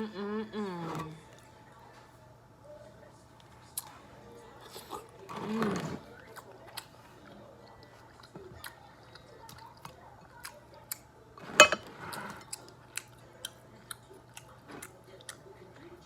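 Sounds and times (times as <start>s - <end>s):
chewing and mouth noises: 6.0s - 11.2s, 12.1s - 16.0s.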